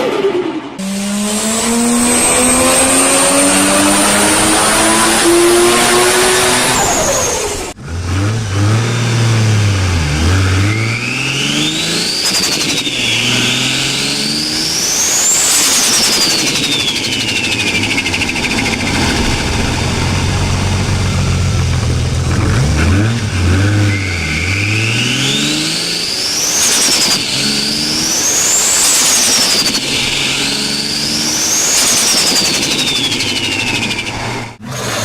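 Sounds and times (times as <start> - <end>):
car engine accelerating: 0.8 - 35.0
car engine revving: 0.8 - 35.0
turbo whistle: 23.6 - 34.2.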